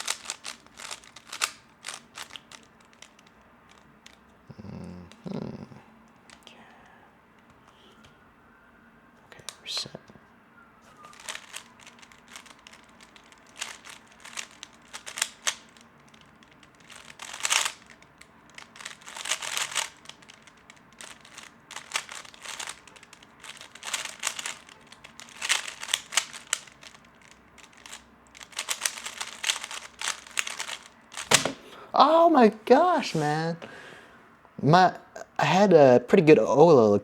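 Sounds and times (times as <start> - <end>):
plastic puzzle cube clicking: 0.0 - 4.2, 11.0 - 31.6.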